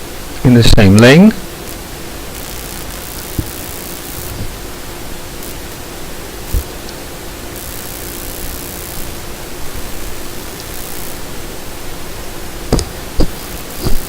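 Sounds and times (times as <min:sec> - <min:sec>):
motor humming: 0:00.0 - 0:14.0
steady rushing noise: 0:00.0 - 0:14.0
wire knocking on breadboard: 0:03.3 - 0:03.6, 0:06.5 - 0:06.8, 0:12.7 - 0:14.0.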